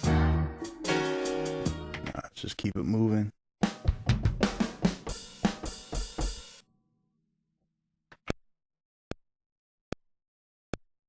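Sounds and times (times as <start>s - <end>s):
hip-hop drum loop: 0.0s - 2.2s, 3.6s - 6.6s.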